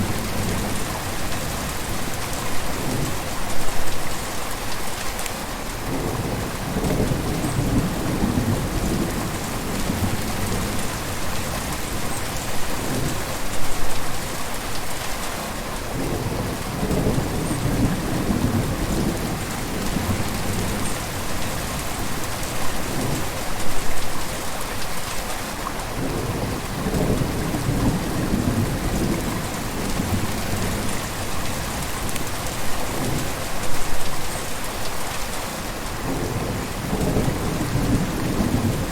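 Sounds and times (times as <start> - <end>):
river water rushing: 19.4 - 36.0.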